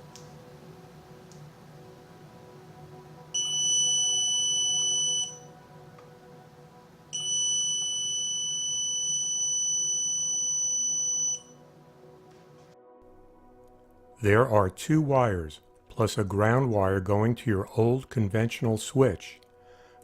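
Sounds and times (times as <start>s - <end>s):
voltage detector high-pitched buzzing: 3.4s - 5.5s, 7.2s - 11.6s.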